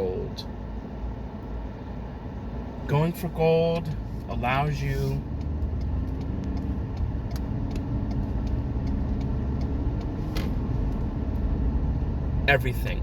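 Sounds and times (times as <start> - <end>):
car engine and tyres rumbling: 0.0 - 13.0.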